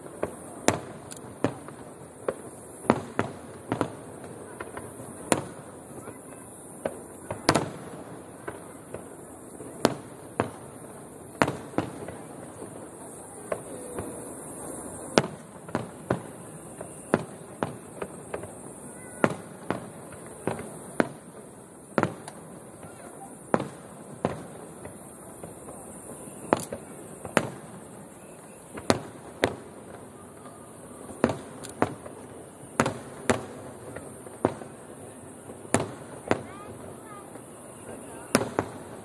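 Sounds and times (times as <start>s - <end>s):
crowd murmuring: 8.5s - 15.5s
firework shells bursting: 31.0s - 34.7s.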